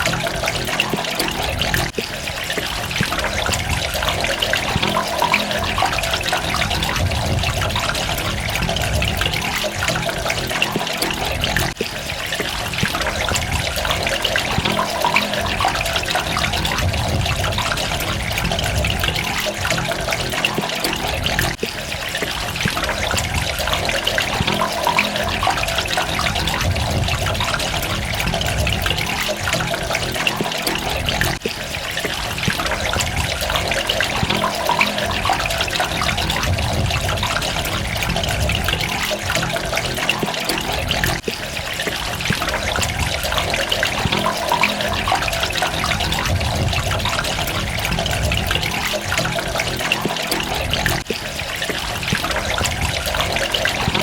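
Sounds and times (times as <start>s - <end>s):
water trickling and splashing: 0.0s - 54.0s.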